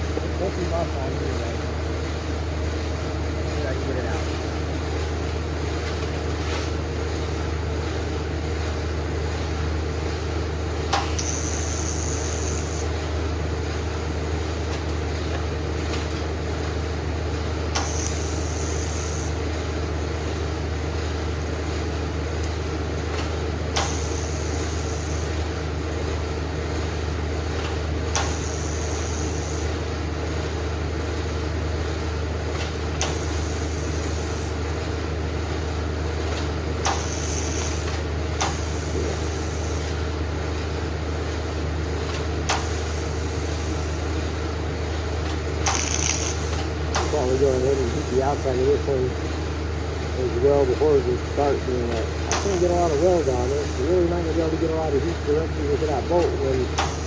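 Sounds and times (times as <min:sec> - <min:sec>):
low machine hum: 0:00.0 - 0:57.0
welder click: 0:10.9 - 0:12.5, 0:17.7 - 0:18.3, 0:23.2 - 0:24.2, 0:27.6 - 0:28.4, 0:36.8 - 0:38.7, 0:45.3 - 0:47.2, 0:51.9 - 0:52.7, 0:56.2 - 0:57.0
welding hiss: 0:11.0 - 0:12.9, 0:17.7 - 0:19.4, 0:23.7 - 0:25.4, 0:28.1 - 0:29.7, 0:33.0 - 0:34.6, 0:36.9 - 0:40.0, 0:42.5 - 0:44.1, 0:45.6 - 0:48.9, 0:51.2 - 0:57.0.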